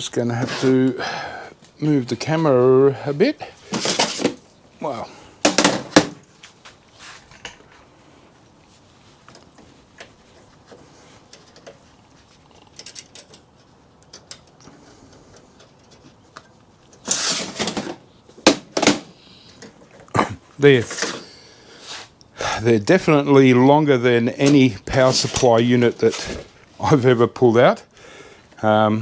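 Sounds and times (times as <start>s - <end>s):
hardware clicks and knocks: 5.4s - 6.4s, 12.5s - 20.1s.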